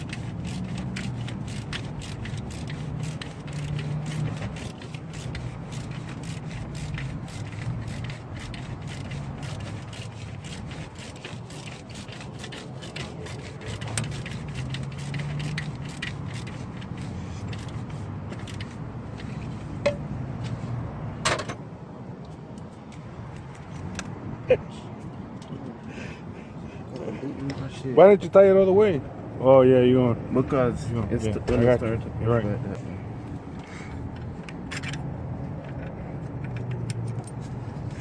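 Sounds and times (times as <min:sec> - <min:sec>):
wrench clicking and scraping metal: 0:00.0 - 0:20.6, 0:22.3 - 0:24.2, 0:33.3 - 0:38.0.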